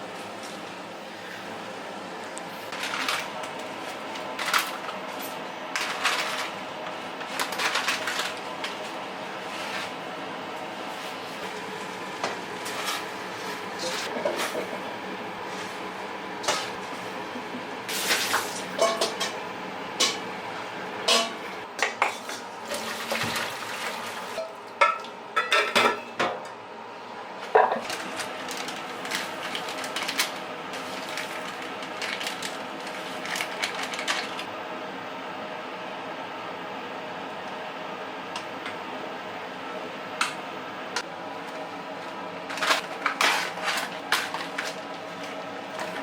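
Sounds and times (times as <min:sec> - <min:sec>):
steady background hum: 0:00.0 - 0:46.0
dishes and cutlery clinking: 0:18.8 - 0:19.4, 0:21.1 - 0:22.4.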